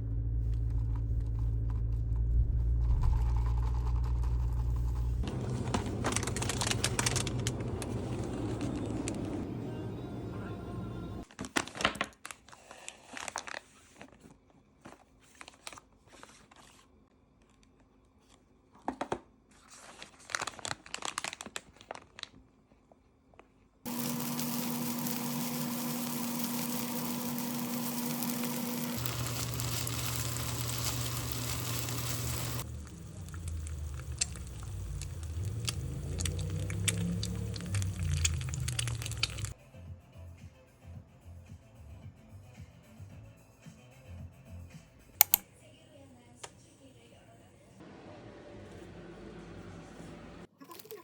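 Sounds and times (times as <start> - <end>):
plastic packaging crinkling: 5.2 - 9.4, 11.2 - 14.2, 19.6 - 22.5, 23.9 - 39.6
loud machine hum: 5.2 - 11.2, 23.9 - 39.5.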